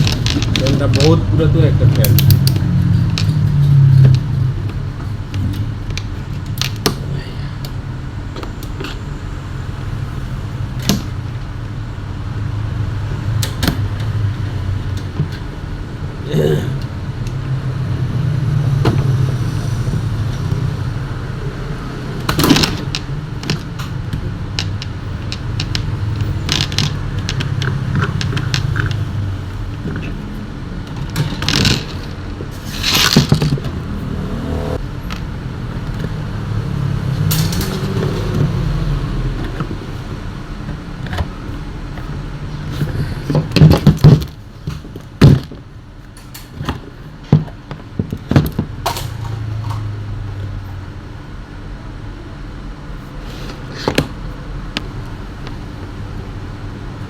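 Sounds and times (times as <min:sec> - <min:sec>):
metal parts clinking and knocking: 0:00.0 - 0:01.2, 0:02.0 - 0:04.5, 0:22.3 - 0:29.1, 0:30.9 - 0:33.8.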